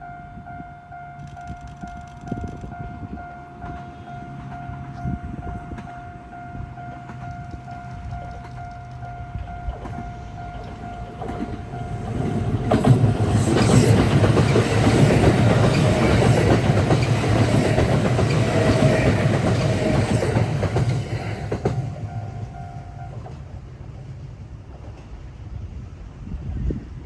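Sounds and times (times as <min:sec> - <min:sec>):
level crossing warning bell: 0:00.0 - 0:12.6
train wheels clattering over rail joints: 0:06.9 - 0:23.6.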